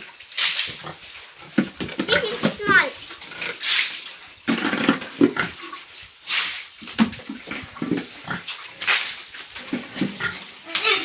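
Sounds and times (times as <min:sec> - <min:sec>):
pigs grunting: 0:00.7 - 0:05.9, 0:06.8 - 0:11.0.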